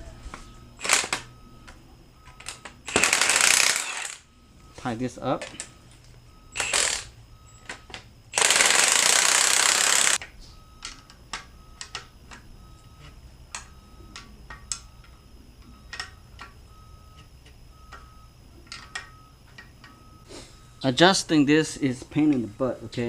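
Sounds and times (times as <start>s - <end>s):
loud burst of noise: 2.9s - 4.2s.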